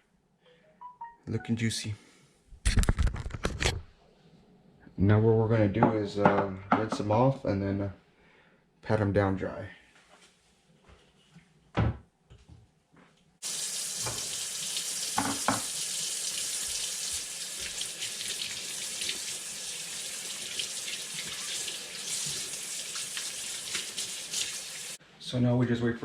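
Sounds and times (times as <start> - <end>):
tap running into a sink: 13.9 - 14.5, 15.1 - 15.8.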